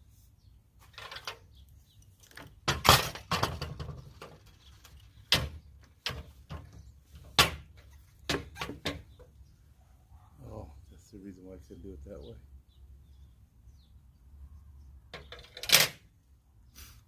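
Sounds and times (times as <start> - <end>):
objects knocking and clattering: 2.3 - 9.3.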